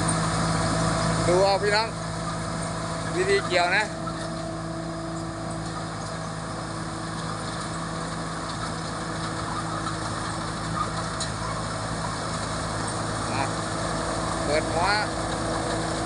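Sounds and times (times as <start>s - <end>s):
combine harvester diesel engine: 0.0s - 16.0s.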